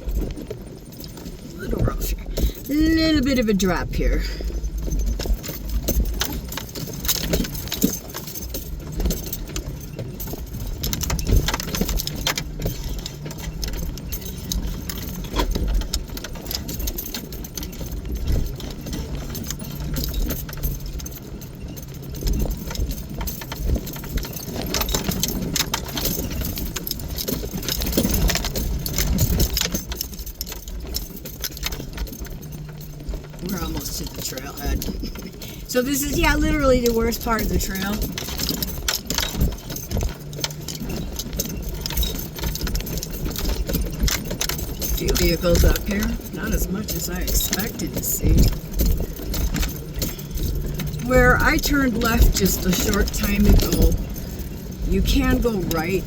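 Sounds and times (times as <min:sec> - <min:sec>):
low engine hum: 0:00.0 - 0:56.0
vehicle rattling and clinking: 0:00.0 - 0:56.0.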